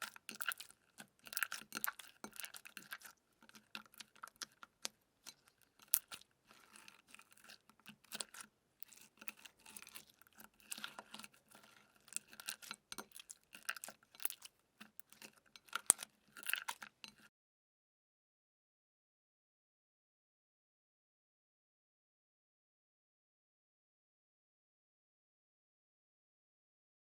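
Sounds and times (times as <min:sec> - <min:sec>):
crunchy slime crackling and popping: 0:00.0 - 0:16.9.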